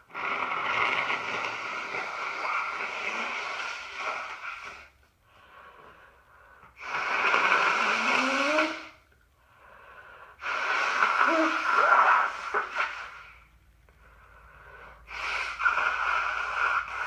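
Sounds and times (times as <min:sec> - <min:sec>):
woman blowing her nose: 0:00.0 - 0:05.0, 0:06.8 - 0:09.0, 0:10.4 - 0:13.5, 0:15.0 - 0:17.0
quiet breathing: 0:00.0 - 0:07.0, 0:08.4 - 0:11.6, 0:13.0 - 0:17.0.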